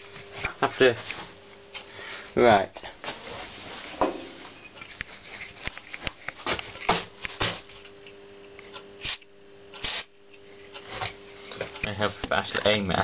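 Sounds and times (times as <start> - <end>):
faint steady hum: 0.0 - 13.0
short hissing bursts: 9.8 - 10.1.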